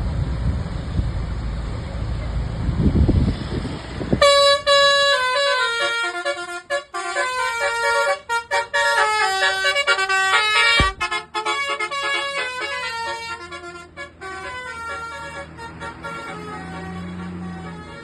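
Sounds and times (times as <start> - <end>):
multi-tone bus air horn tune: 4.2 - 18.0.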